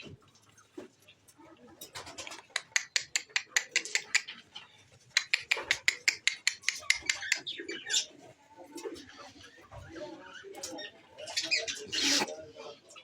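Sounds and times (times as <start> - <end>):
rapid sharp tapping: 5.2 - 7.4.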